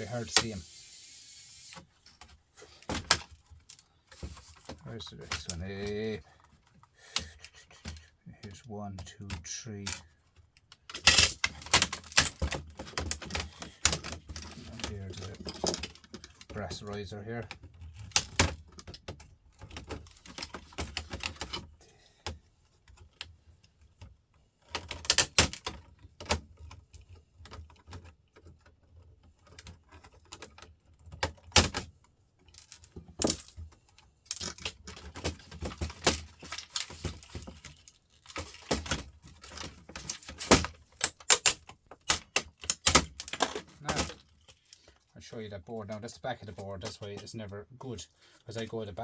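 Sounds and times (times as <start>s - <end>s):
small parts and screws clicking: 0.0s - 21.7s, 22.9s - 45.1s.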